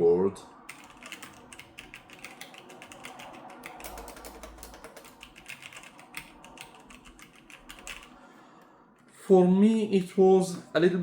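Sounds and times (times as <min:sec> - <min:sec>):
mechanical keyboard key clicks: 0:00.7 - 0:08.1.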